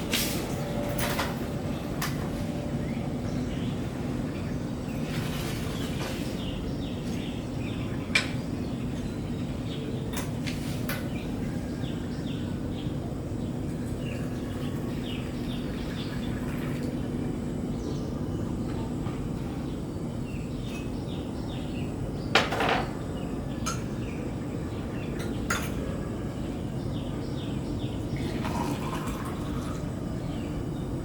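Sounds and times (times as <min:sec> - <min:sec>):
small birds chirping: 0:01.8 - 0:22.3.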